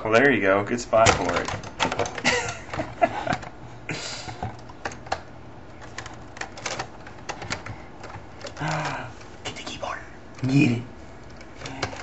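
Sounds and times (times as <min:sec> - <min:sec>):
keyboard keys clacking: 0:04.3 - 0:12.0.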